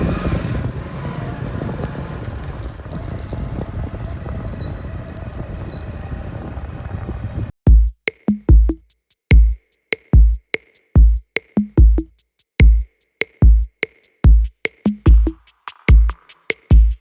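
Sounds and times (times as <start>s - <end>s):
drum machine beat: 7.7s - 17.0s.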